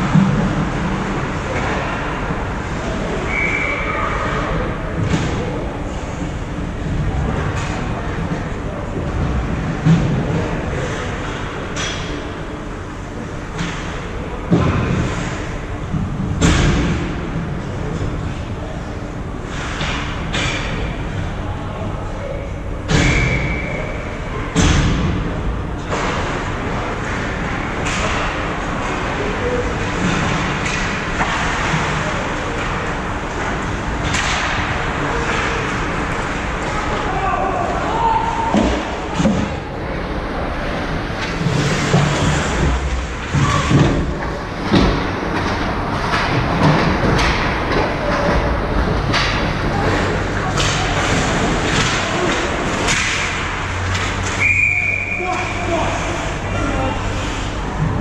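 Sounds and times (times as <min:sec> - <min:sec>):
hockey stick hitting puck: 0:41.2 - 0:54.5.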